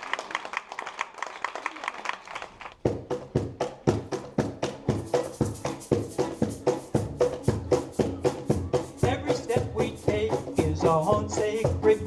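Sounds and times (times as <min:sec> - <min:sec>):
percussion beat: 0:02.8 - 0:12.0.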